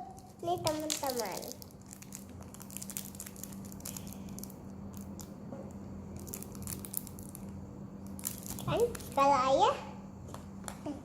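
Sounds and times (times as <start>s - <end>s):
wrapper crinkling and tearing: 0.0s - 5.3s, 6.2s - 9.2s
steady low hum: 0.0s - 11.0s.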